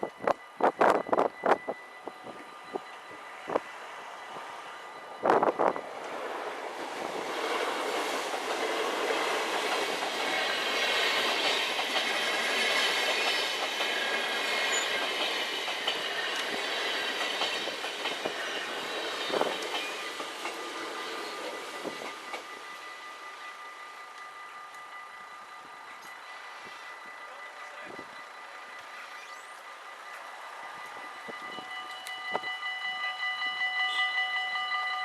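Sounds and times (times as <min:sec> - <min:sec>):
train wheels rushing on rails: 0:00.0 - 0:35.0
train wheels knocking: 0:07.3 - 0:22.6.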